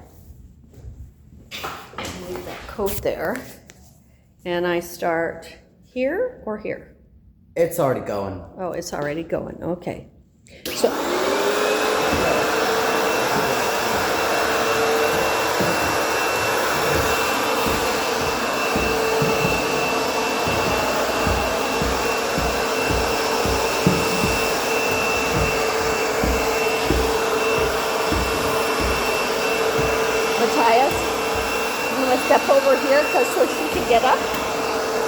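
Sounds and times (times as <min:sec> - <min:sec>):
vacuum cleaner running: 0:10.6 - 0:35.0
low thumps: 0:11.8 - 0:35.0.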